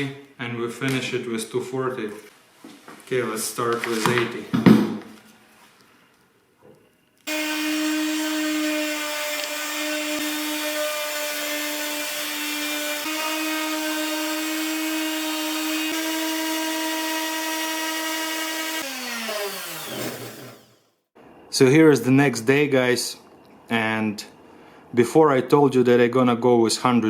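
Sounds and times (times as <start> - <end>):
electric sander running: 7.3 - 20.8.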